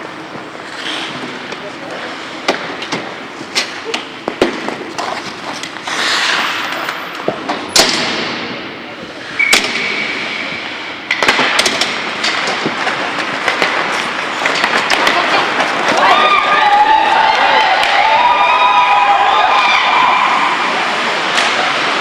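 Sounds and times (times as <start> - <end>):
hockey sticks and puck clacking: 0.0 - 8.5, 9.4 - 19.7, 21.3 - 22.0
skate blades scraping ice: 0.2 - 7.5, 9.2 - 18.3.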